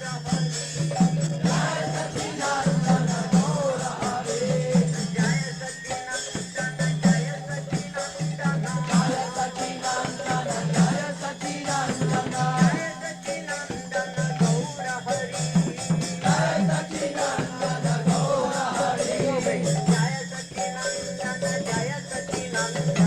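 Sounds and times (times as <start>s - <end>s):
hand drums: 0.0s - 23.0s
group of voices chanting: 1.4s - 5.1s, 16.2s - 19.8s.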